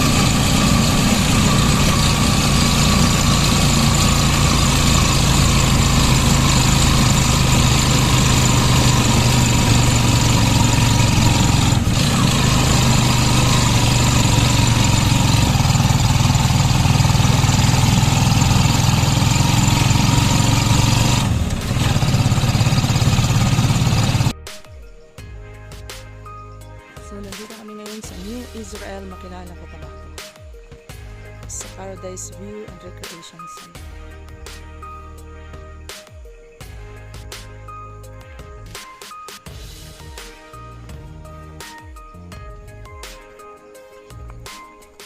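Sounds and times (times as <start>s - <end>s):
vehicle engine running: 0.0s - 24.4s.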